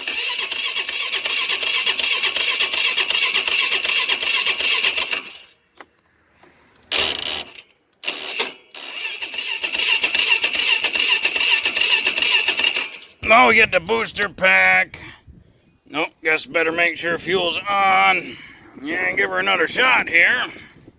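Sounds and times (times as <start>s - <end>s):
electric starter cranking engine: 0.0s - 5.6s, 6.8s - 13.2s.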